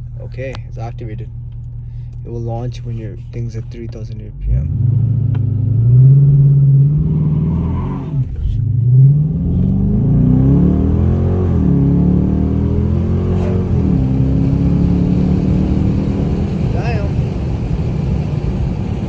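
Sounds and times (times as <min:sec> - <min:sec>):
man talking: 0:00.0 - 0:01.3, 0:02.2 - 0:04.7
car engine revving: 0:00.0 - 0:19.0.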